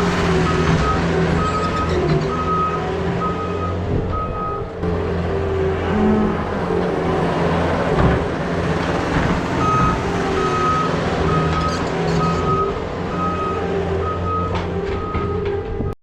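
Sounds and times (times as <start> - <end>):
vehicle backup alarm beeping: 0.3 - 4.8, 9.6 - 16.0.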